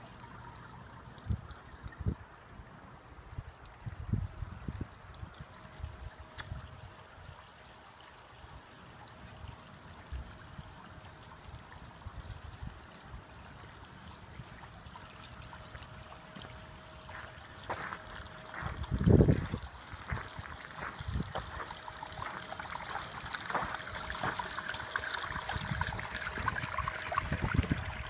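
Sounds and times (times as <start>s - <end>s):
floodwater rushing: 13.4s - 28.0s.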